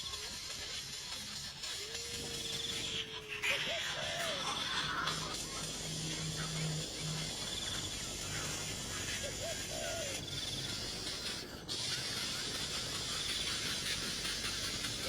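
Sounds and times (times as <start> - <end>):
steady high hiss: 0.0 - 15.0.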